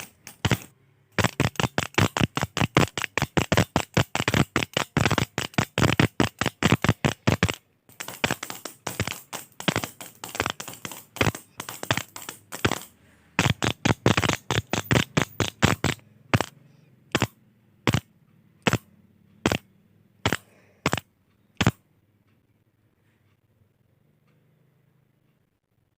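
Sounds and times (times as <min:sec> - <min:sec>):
click pen clicking: 0:00.0 - 0:16.5.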